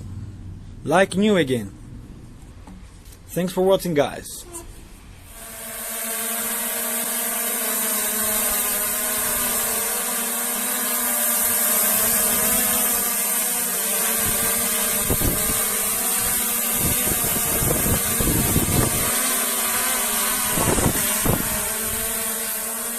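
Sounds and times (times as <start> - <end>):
drone propellers whirring: 5.2 - 22.9
wind buffeting microphone: 14.2 - 15.6, 16.2 - 19.1, 20.5 - 21.6.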